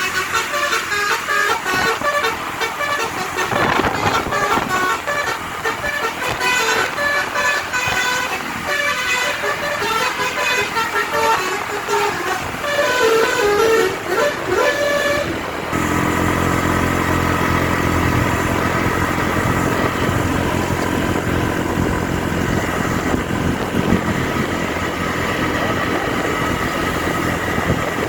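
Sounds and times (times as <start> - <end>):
bus horn melody: 0.0 - 28.0
road noise: 0.0 - 28.0
vehicle engine running: 0.0 - 28.0.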